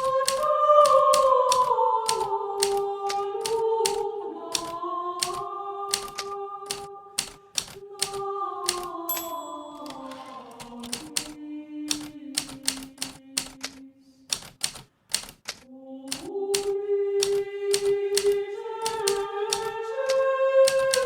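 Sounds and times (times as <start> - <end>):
manual typewriter typing: 0.0 - 21.0
soft held musical tone: 9.1 - 10.9.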